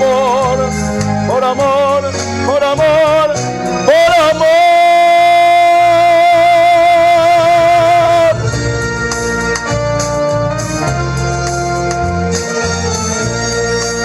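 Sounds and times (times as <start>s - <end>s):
man singing high note: 0.0s - 8.6s
organ-like keyboard with bass: 0.0s - 14.0s.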